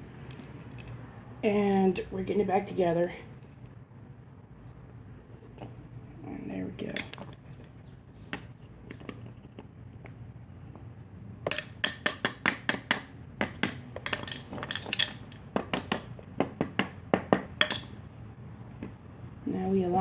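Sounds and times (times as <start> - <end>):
plastic fan parts clicking: 6.8 - 16.7, 17.6 - 17.9.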